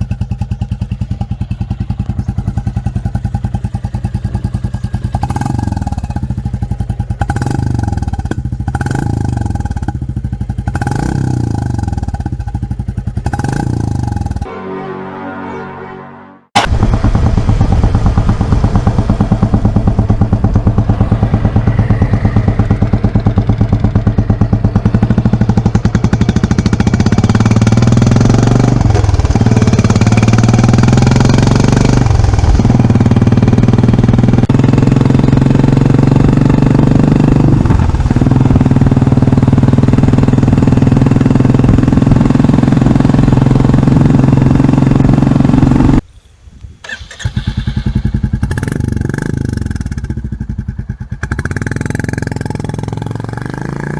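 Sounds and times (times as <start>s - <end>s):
motorcycle engine exhaust thump: 0.0s - 14.5s, 16.6s - 31.0s.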